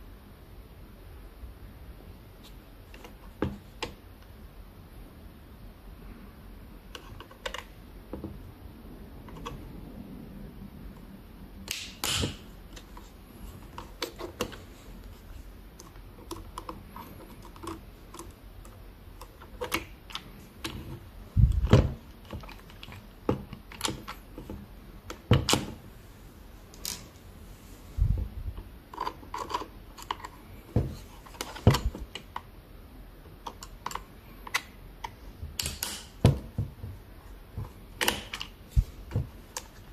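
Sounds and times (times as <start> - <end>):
clicks of small tools and plastic parts: 28.9 - 30.4, 33.4 - 36.2.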